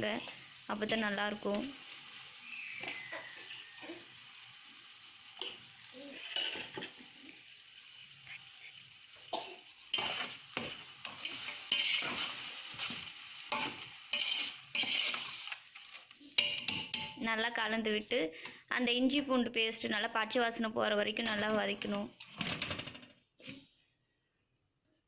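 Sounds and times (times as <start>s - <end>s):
onions sizzling in a pot: 0.0s - 17.9s
spoon scraping a pot: 5.4s - 7.1s, 9.9s - 17.2s.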